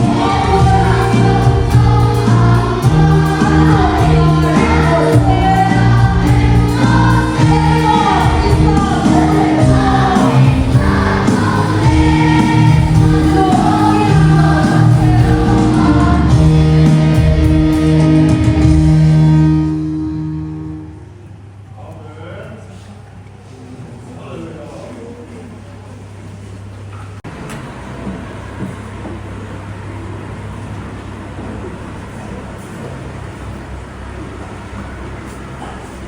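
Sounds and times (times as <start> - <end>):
choir singing a hymn: 0.0 - 20.4
low accompaniment: 0.0 - 21.6.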